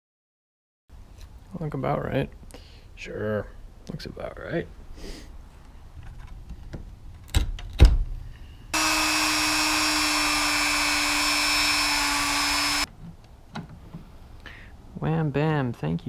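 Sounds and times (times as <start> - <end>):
small electric power tool running: 8.8 - 12.9.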